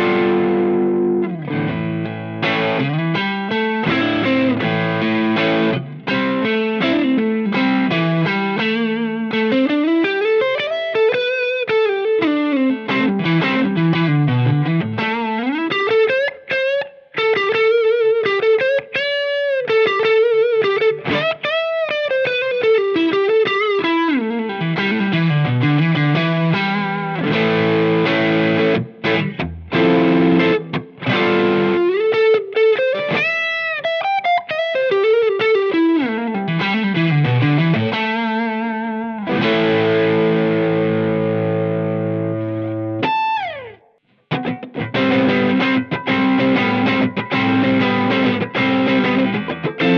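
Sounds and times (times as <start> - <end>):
ringing guitar chord: 0.0 - 9.6, 36.2 - 49.9
overdriven electric guitar lead: 0.0 - 49.9.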